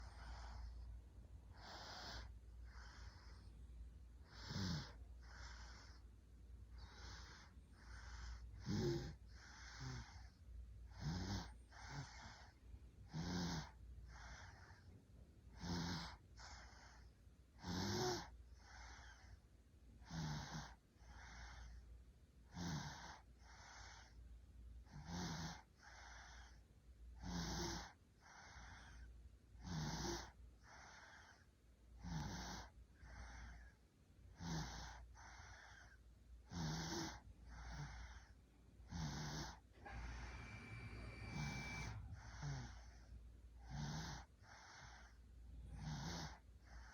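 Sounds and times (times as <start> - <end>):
soft breath: 0.0 - 17.3, 27.8 - 29.2, 30.2 - 31.6, 34.6 - 36.1, 37.0 - 46.9
person snoring: 38.9 - 45.1.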